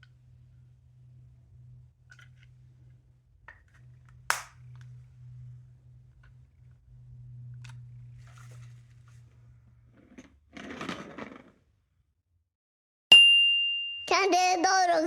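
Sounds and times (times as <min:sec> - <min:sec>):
plastic toy clicks and taps: 0:04.3 - 0:04.6
sharp plastic snap: 0:04.3 - 0:04.9.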